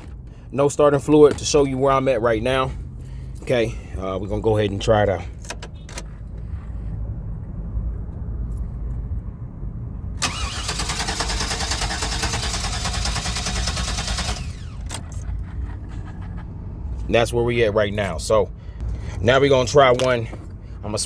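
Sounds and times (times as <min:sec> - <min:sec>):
low steady rumble: 0:00.0 - 0:21.0
starter cranking engine: 0:10.2 - 0:15.4.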